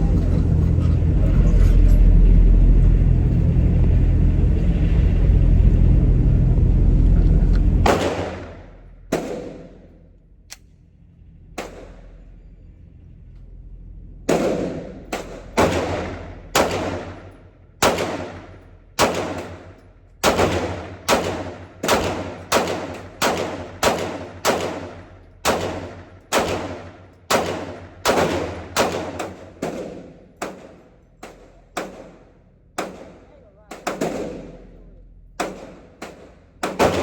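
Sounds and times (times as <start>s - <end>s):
pistol shots echoing: 7.9s - 9.8s, 14.3s - 32.2s, 32.8s - 34.7s, 35.4s - 37.0s.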